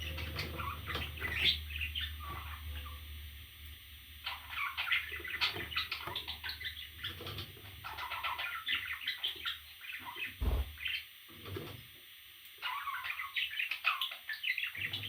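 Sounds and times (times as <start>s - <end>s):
parrot chicks chirping: 0.0s - 3.0s, 4.2s - 10.8s
short low thud: 10.4s - 10.8s.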